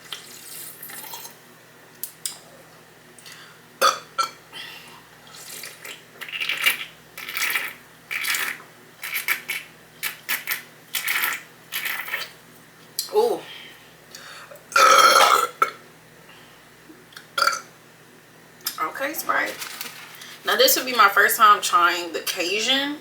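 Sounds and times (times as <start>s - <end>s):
person gulping: 5.2s - 8.6s, 14.7s - 15.8s, 17.4s - 17.7s.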